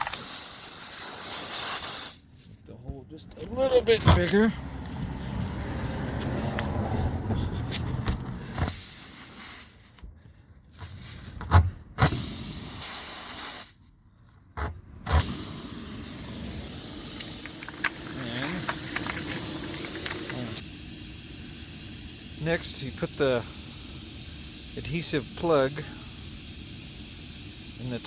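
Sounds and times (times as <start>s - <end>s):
air hissing from tire: 0.0s - 2.5s, 4.7s - 14.4s, 15.1s - 28.0s.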